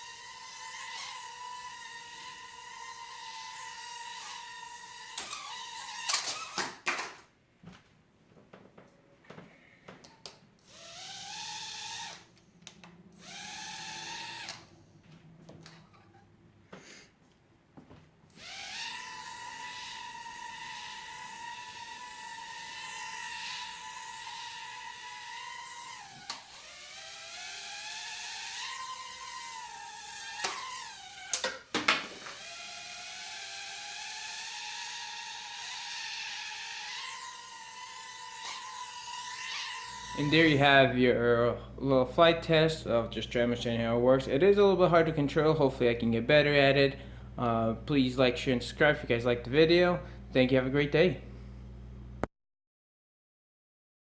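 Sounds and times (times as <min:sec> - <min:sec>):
quadcopter propellers whining: 0:00.0 - 0:06.6, 0:10.6 - 0:12.3, 0:13.1 - 0:14.7, 0:18.3 - 0:40.7.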